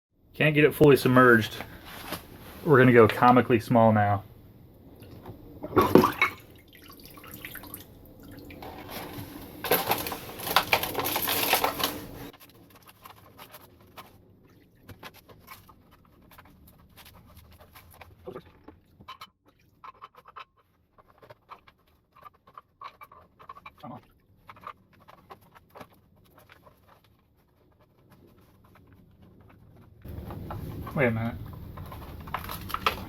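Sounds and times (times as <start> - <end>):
liquid pouring and splashing: 4.9 - 11.5.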